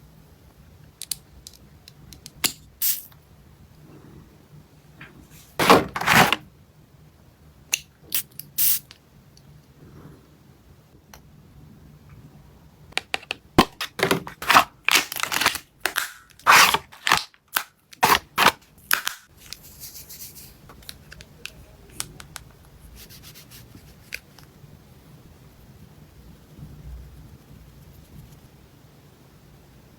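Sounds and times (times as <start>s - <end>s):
soft hiss: 0.0s - 5.6s, 7.0s - 12.8s, 19.2s - 29.9s
packaging clicks and crinkling: 13.6s - 19.6s.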